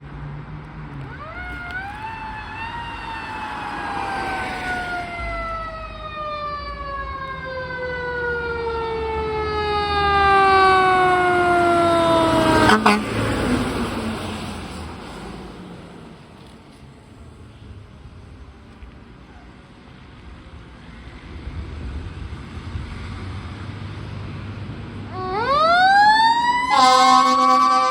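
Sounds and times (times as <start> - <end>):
truck rumble: 0.0 - 27.9
fire truck siren: 1.1 - 14.8, 25.0 - 27.9
short loud horn blast: 12.2 - 13.3, 26.6 - 27.9.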